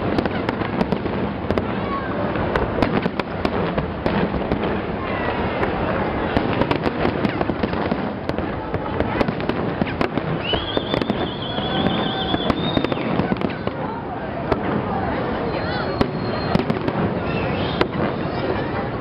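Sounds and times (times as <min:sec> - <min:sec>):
fireworks popping and crackling: 0:00.0 - 0:19.0
high whistle: 0:10.4 - 0:13.1, 0:15.4 - 0:17.9.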